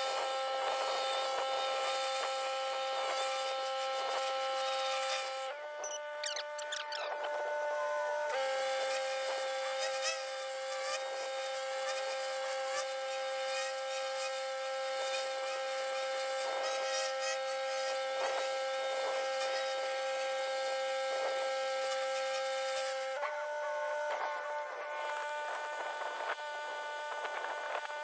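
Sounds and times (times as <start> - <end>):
pressure washer whine: 0.0 - 28.0.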